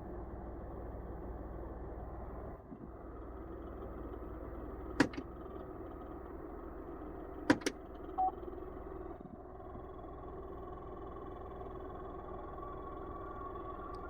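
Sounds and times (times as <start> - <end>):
car air conditioning rushing: 4.8 - 5.4.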